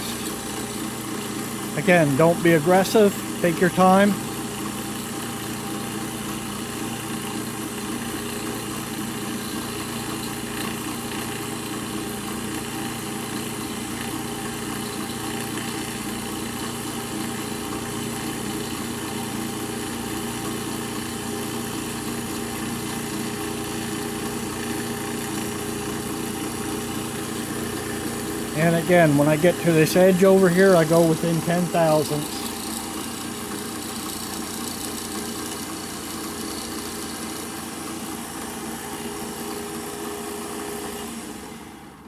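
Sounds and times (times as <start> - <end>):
milling machine cutting metal tube: 0.0 - 39.4.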